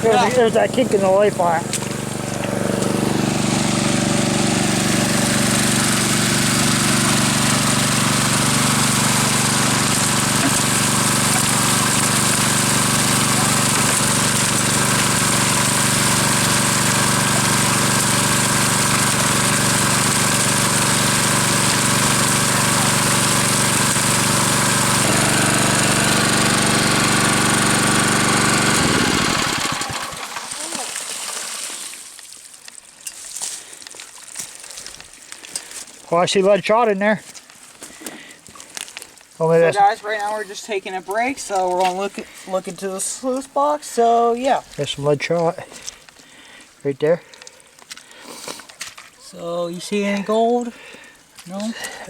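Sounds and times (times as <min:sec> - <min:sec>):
small gasoline engine running: 0:00.0 - 0:31.0
rushing water hiss: 0:45.9 - 0:51.4.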